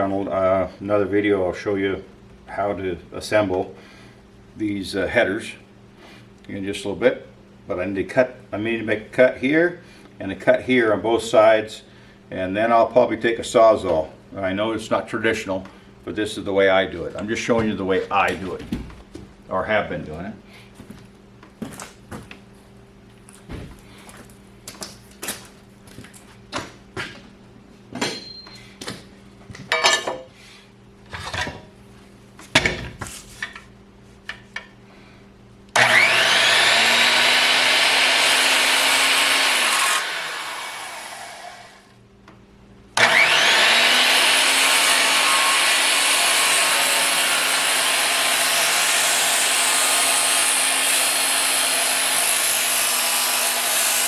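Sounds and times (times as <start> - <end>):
electric saw cutting timber: 35.8 - 42.0, 43.0 - 54.0.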